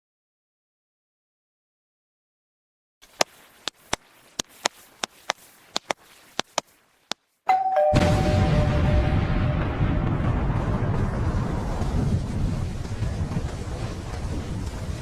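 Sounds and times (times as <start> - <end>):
sharp taps: 3.0 - 7.2
two-tone doorbell chime: 7.5 - 9.7.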